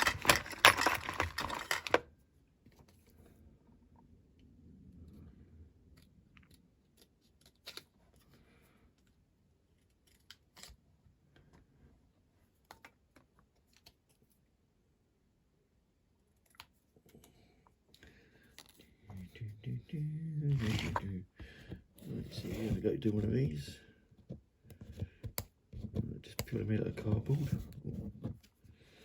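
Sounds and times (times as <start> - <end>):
small tools clicking and tapping: 0.0 - 2.0.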